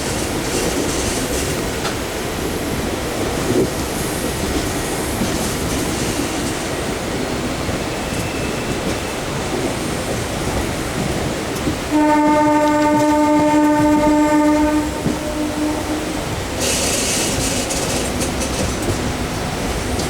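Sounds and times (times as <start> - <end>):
electric train running on track: 0.0 - 20.0
train horn blast: 11.9 - 17.0.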